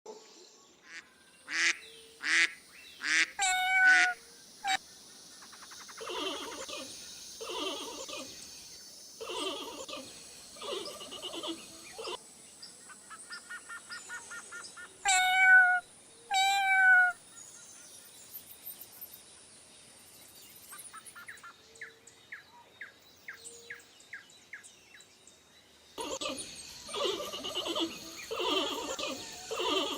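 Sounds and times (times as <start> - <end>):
softer repeated animal calls: 0.8 - 4.8, 5.4 - 8.4, 9.2 - 12.2, 13.8 - 17.2, 26.9 - 29.9
loud falling animal cries: 3.4 - 4.2.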